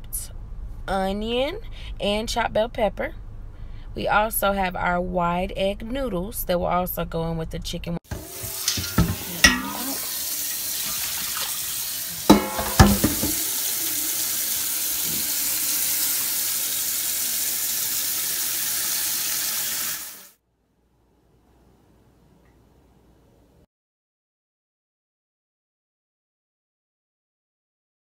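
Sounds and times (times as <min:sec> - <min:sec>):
faucet running: 0:08.1 - 0:20.4.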